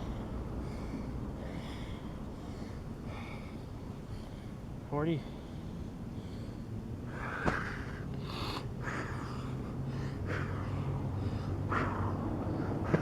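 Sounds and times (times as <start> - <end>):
man breathing hard: 0.0 - 13.0.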